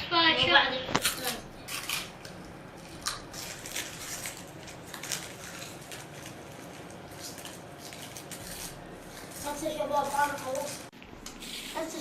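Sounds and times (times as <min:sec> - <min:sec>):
person chewing crunchy chips: 0:01.0 - 0:09.5.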